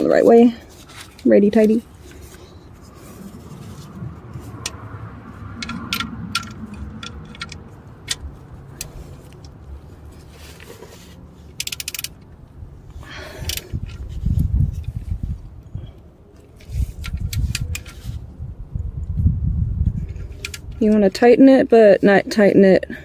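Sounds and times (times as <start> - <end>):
metal scraping: 0.0 - 12.2
ratchet clicking: 11.5 - 12.3.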